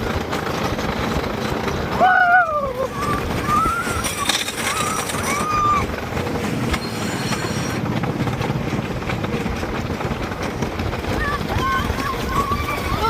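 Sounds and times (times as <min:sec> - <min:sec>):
train rolling on rails: 0:00.0 - 0:13.0
train wheels squealing: 0:02.9 - 0:05.9, 0:06.6 - 0:07.9.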